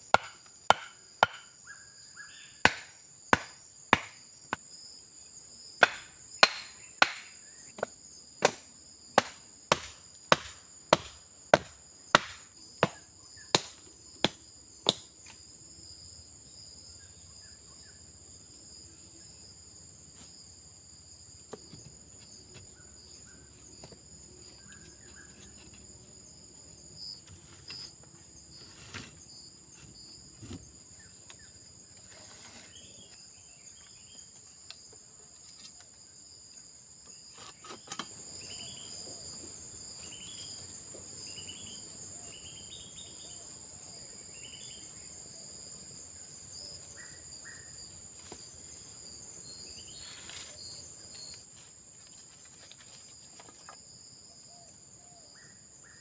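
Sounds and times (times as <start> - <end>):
insects chirring: 0.0 - 56.0
chopping wood: 0.1 - 1.5, 2.6 - 4.6, 5.8 - 15.1.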